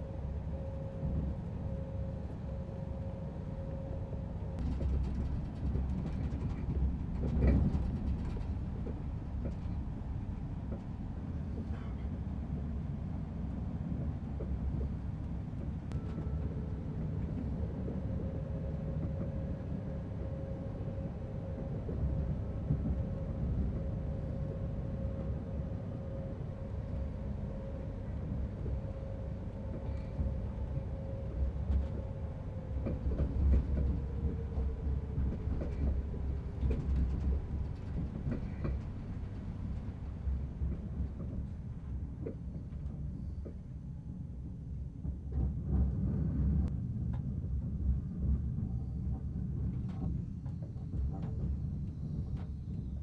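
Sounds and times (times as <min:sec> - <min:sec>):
train low rumble: 0:00.0 - 0:53.0.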